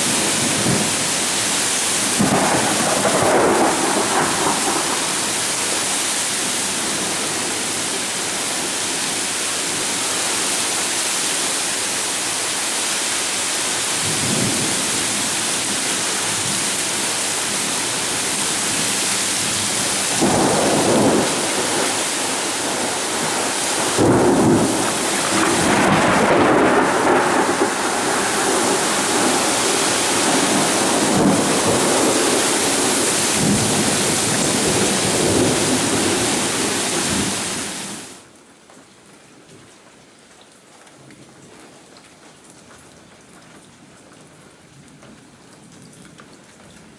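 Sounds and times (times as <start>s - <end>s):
heavy rain pouring: 0.0s - 38.3s
thunder rumbling: 2.0s - 8.0s, 14.0s - 38.1s.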